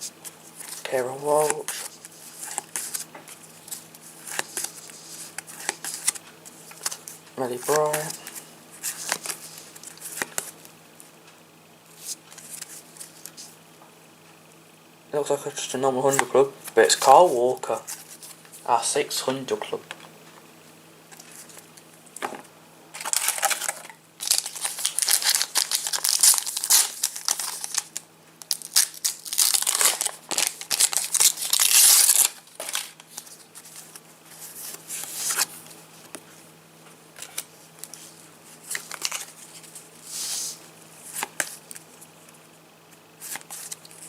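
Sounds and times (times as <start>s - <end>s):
card packets tearing and crinkling: 0.5s - 10.6s, 23.0s - 35.6s, 37.2s - 41.8s, 43.2s - 44.0s.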